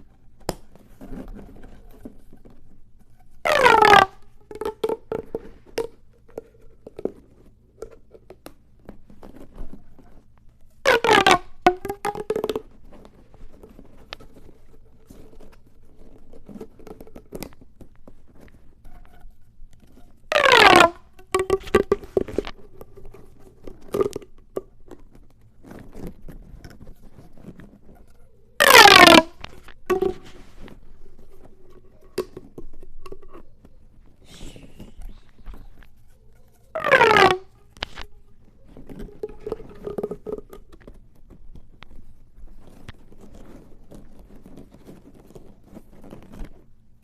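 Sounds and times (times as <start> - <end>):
pop tube zip falling in pitch: 3.5 - 4.2, 10.9 - 12.3, 20.3 - 21.9, 28.6 - 30.1, 36.8 - 37.5.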